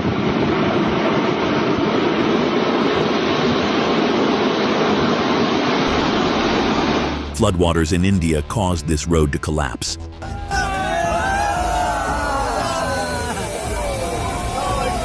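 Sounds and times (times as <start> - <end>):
floodwater roaring: 0.3 - 7.9.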